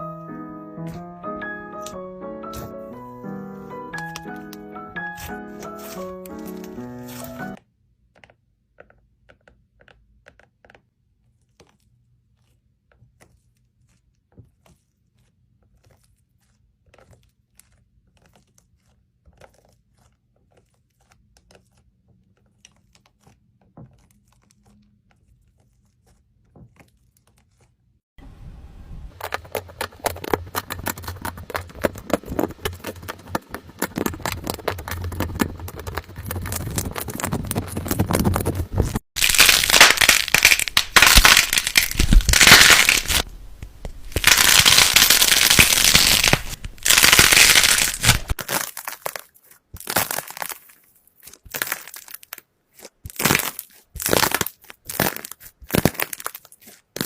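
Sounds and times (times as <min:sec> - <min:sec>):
slime squeezed by hand: 0:03.6 - 0:07.6, 0:44.1 - 0:57.0
slime crackling and popping: 0:03.9 - 0:07.6, 0:29.2 - 0:43.3, 0:44.0 - 0:57.0.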